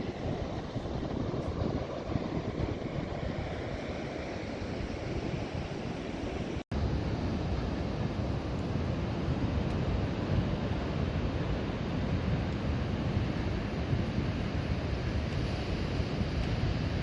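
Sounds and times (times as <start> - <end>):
ocean surf washing in: 0.0 - 17.0
wind rumbling on microphone: 0.0 - 17.0.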